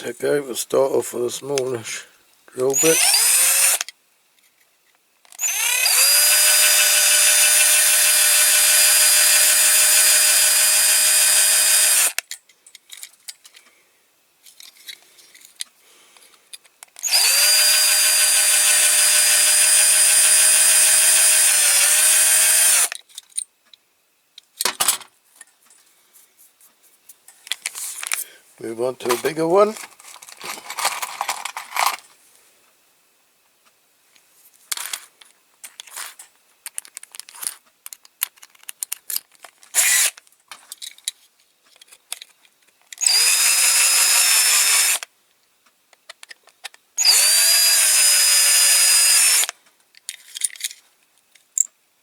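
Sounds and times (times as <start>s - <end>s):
electric drill whining: 2.7s - 3.9s, 5.4s - 12.2s, 17.0s - 23.0s, 43.0s - 45.0s, 47.0s - 49.5s
light clicks and scrapes: 14.4s - 16.9s.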